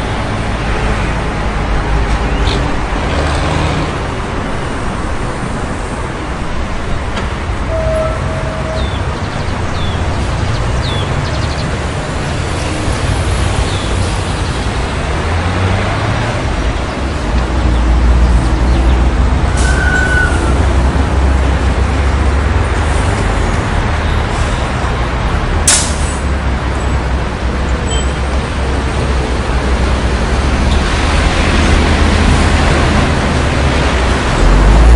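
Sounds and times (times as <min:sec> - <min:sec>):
street traffic rumble: 0:00.0 - 0:34.9
heavy vehicle passing: 0:07.3 - 0:34.9.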